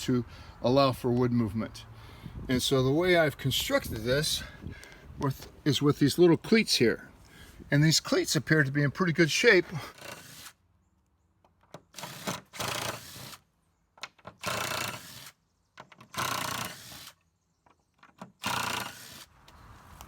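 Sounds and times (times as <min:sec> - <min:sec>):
hand tool scraping wood: 0:09.6 - 0:10.6.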